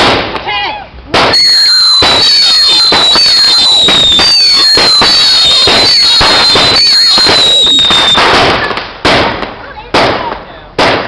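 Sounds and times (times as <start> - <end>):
firework crackling pops: 0.0 - 11.0
firework whistling: 1.2 - 8.8.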